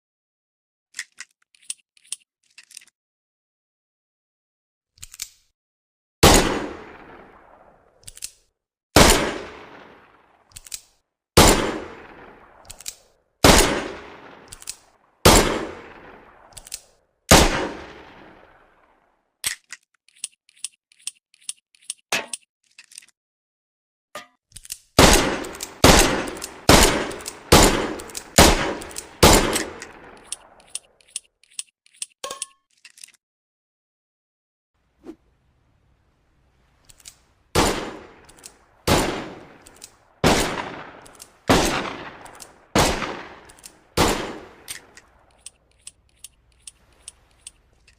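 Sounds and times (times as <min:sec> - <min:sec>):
small metallic clicks: 0:00.9 - 0:03.0, 0:05.0 - 0:05.5, 0:08.0 - 0:08.5, 0:10.5 - 0:11.0, 0:12.6 - 0:13.2, 0:14.4 - 0:14.9, 0:16.5 - 0:16.9, 0:19.4 - 0:23.2, 0:24.2 - 0:33.2, 0:36.8 - 0:37.3, 0:38.1 - 0:38.7, 0:39.5 - 0:40.1, 0:40.9 - 0:41.4, 0:42.1 - 0:42.6, 0:43.4 - 0:43.9, 0:44.6 - 0:47.9.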